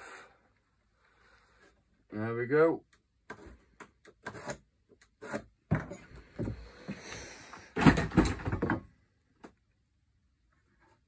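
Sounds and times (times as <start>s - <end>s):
timber knocking and scraping: 5.2s - 7.1s.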